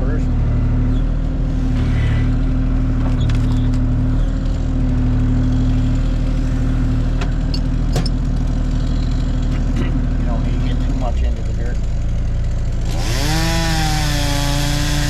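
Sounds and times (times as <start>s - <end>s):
excavator diesel engine running: 0.0s - 15.0s.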